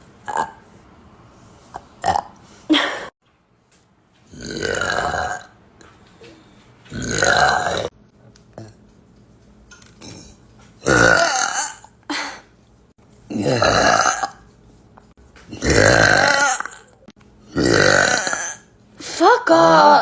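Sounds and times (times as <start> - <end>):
person burping loudly: 0.2 - 0.6, 4.3 - 5.6, 6.9 - 7.9, 10.8 - 12.0, 13.3 - 14.5, 15.5 - 18.7.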